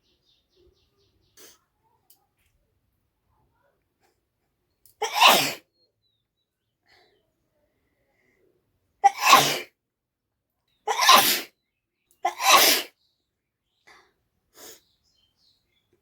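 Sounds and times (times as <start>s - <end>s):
person sneezing: 5.0s - 5.6s, 9.0s - 9.7s, 10.9s - 11.5s, 12.3s - 12.9s.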